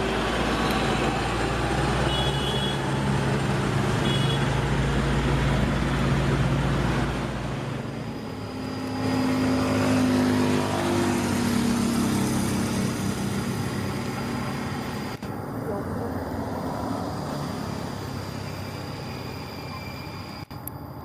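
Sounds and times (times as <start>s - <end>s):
high motor whining: 0.0s - 21.0s.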